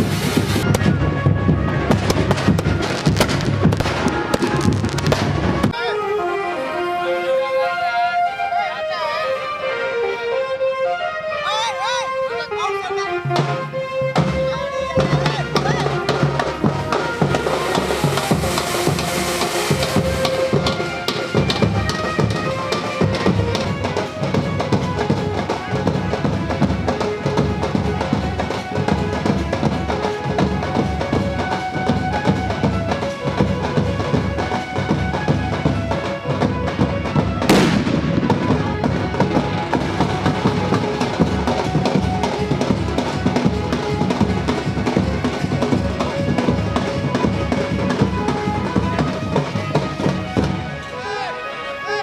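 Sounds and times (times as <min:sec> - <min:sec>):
firecracker bang: 0:00.0 - 0:05.7, 0:37.4 - 0:41.0
drum-heavy procession music: 0:00.0 - 0:52.0.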